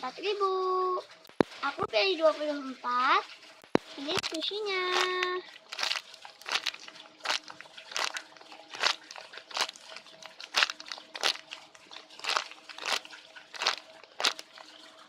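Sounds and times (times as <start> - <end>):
squishy toy crunchy squeezes: 4.0 - 14.5.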